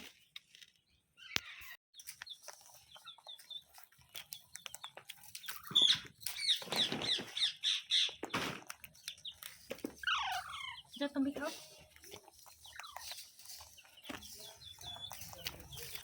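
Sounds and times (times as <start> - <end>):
scuffling noises: 2.0 - 7.5, 8.3 - 16.0
parrot chirping and squawking: 5.4 - 8.2, 9.4 - 11.6.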